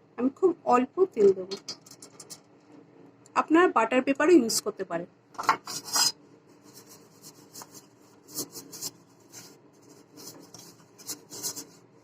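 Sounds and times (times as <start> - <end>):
faint rubbing strokes in cake tin: 5.6 - 12.0.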